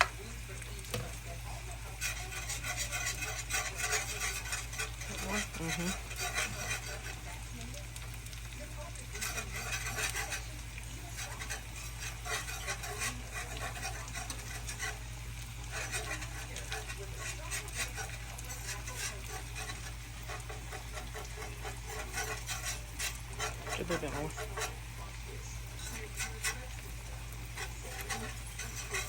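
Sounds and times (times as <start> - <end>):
whisk scraping and clicking in pan: 0.0 - 29.0.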